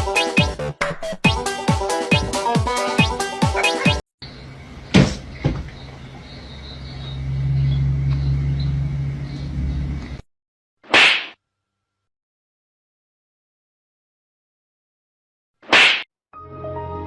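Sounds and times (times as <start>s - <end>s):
electronic music with steady beat: 0.0s - 4.0s.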